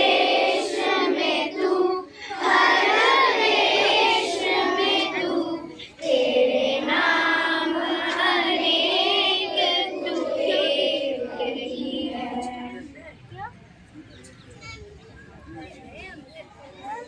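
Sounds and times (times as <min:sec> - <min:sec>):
children singing: 0:00.0 - 0:12.9.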